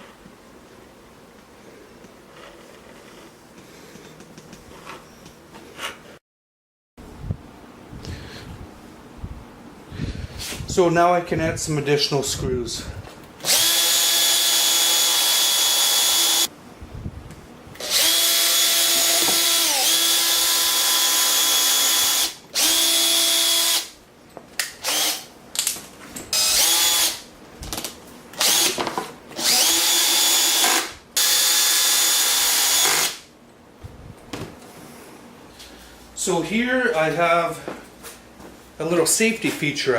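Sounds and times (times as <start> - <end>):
power drill driving screws: 13.4 - 16.5, 17.8 - 23.9, 24.8 - 25.3, 26.4 - 27.2, 28.4 - 28.8, 29.4 - 33.2.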